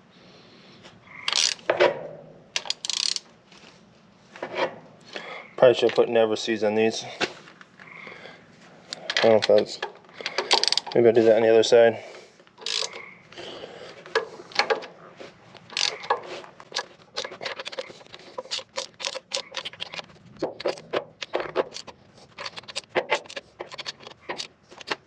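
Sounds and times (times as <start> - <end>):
ratchet wrench clicking: 1.3 - 1.7, 2.6 - 3.3, 10.2 - 11.0, 12.6 - 13.0, 15.7 - 25.0
metal clinks and scrapes: 12.6 - 13.0, 14.0 - 25.0.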